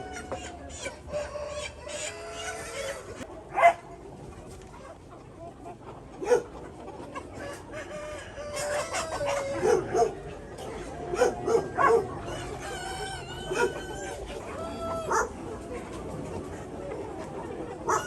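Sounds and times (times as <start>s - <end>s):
sharp chicken calls: 0.0s - 3.3s, 7.2s - 15.6s
chickens clucking: 0.0s - 18.0s.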